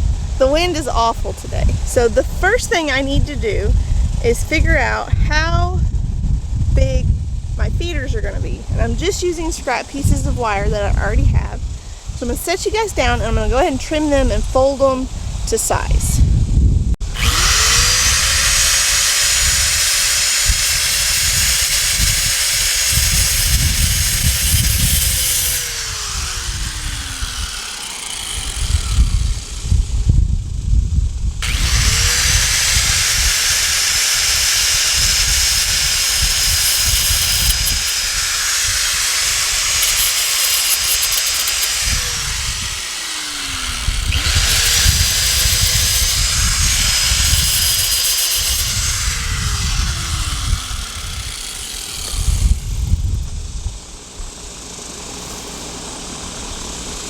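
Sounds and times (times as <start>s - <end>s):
wind buffeting microphone: 0.0s - 54.3s
power tool motor running: 17.0s - 30.4s, 31.4s - 53.4s.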